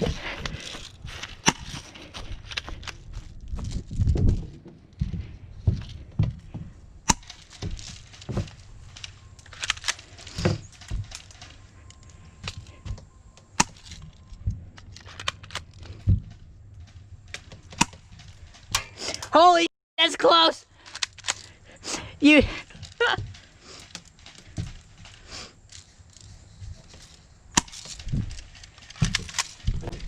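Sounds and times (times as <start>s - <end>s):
sharp cracks and snaps: 7.0s - 12.6s, 13.4s - 19.3s, 20.8s - 21.6s, 22.7s - 30.0s.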